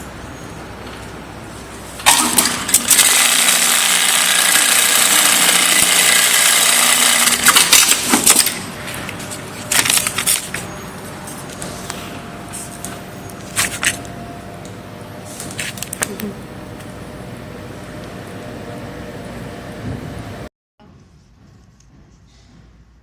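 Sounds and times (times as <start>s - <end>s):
low motor hum: 0.0s - 21.5s
mechanical clattering: 2.0s - 10.8s
sewing machine stitching: 2.1s - 8.8s.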